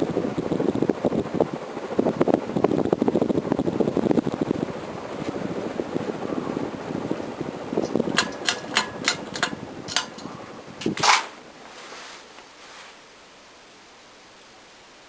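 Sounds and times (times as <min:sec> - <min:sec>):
ceiling fan running: 0:00.0 - 0:15.0
sharp clicks: 0:07.8 - 0:11.3
faint steady hiss: 0:09.6 - 0:15.0.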